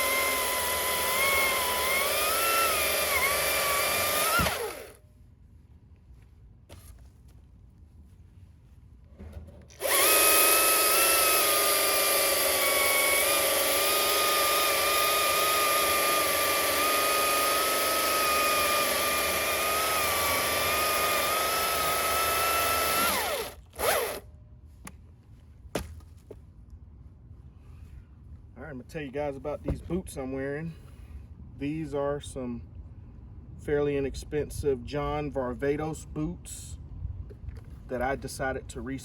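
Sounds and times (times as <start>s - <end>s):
battery chainsaw whining: 0.0s - 5.0s, 9.7s - 24.2s.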